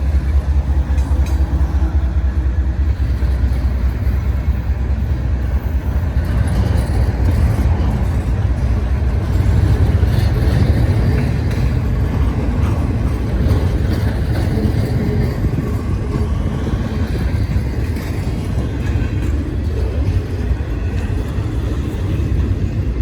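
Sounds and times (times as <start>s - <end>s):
freight train wheels rumbling: 0.0s - 23.0s.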